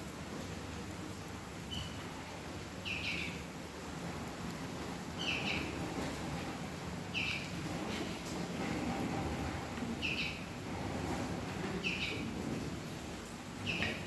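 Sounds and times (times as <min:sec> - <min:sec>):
low background noise: 0:00.0 - 0:14.0
bird chirping: 0:01.7 - 0:02.0, 0:02.8 - 0:03.4, 0:05.2 - 0:05.7, 0:07.1 - 0:07.5, 0:10.0 - 0:10.5, 0:11.8 - 0:12.3, 0:13.6 - 0:14.0.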